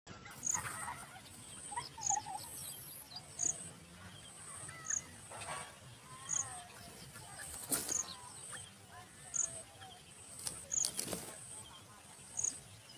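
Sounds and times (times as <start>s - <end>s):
high-pitched bird chirp: 0.2s - 10.0s
scattered bird chirps and calls: 0.2s - 12.9s.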